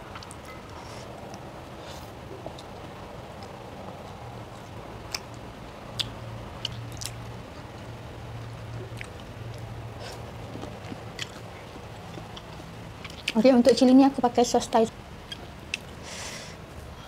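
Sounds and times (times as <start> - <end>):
steady low hum: 0.0 - 17.0
chewing with mouth clicks: 4.5 - 7.7, 8.7 - 13.4.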